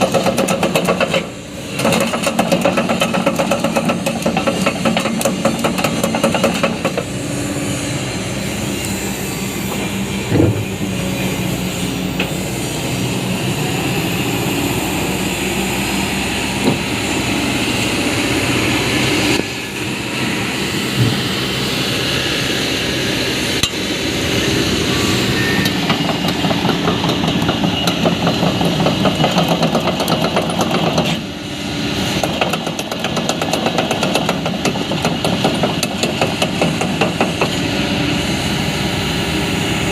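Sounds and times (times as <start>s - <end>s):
diesel engine running: 0.0s - 39.9s
sharp clunks and knocks: 16.6s - 16.9s.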